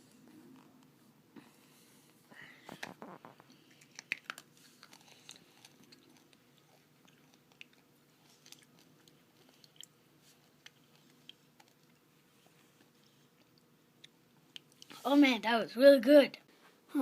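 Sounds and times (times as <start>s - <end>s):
person crunching a mint: 3.0s - 12.0s.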